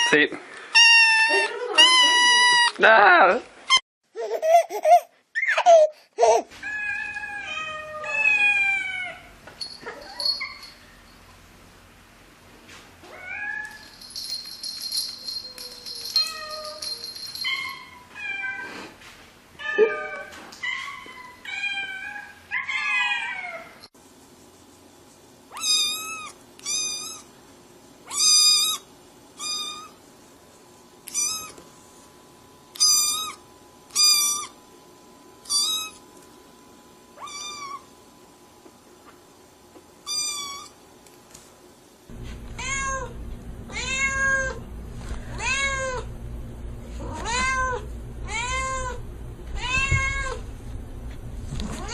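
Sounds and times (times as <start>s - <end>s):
low hum: 42.1s - 51.9s.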